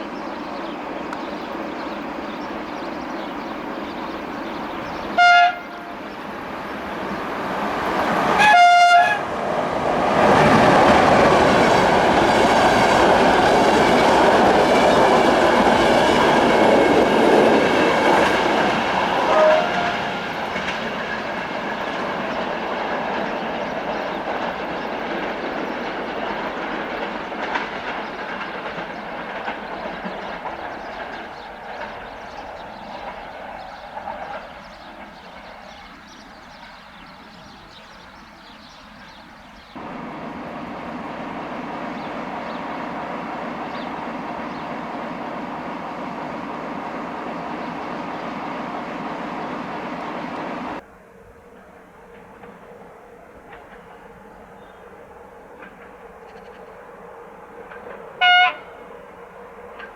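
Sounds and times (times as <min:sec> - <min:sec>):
train wheels clattering over rails: 0:00.0 - 0:50.8, 0:51.5 - 0:59.9
locomotive horn blasts: 0:05.2 - 0:06.1, 0:08.3 - 0:09.4, 0:19.2 - 0:20.2, 0:58.2 - 0:58.9.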